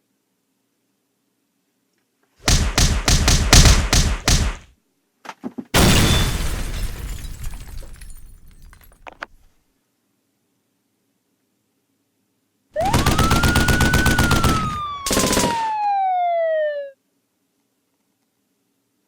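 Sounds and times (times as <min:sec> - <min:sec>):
sharp knocks: 0:02.5 - 0:04.6
loud smash with crashing tail: 0:05.8 - 0:08.6.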